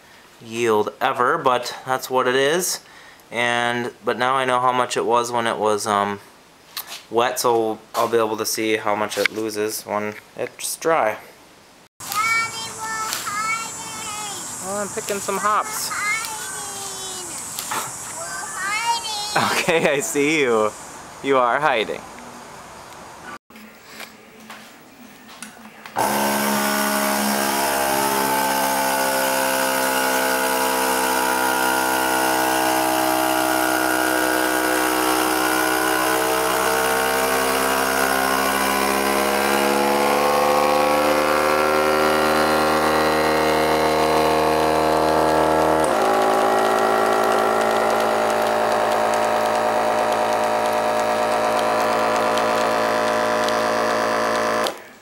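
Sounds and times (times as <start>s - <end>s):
vacuum sealer pump motor: 26.0s - 54.9s.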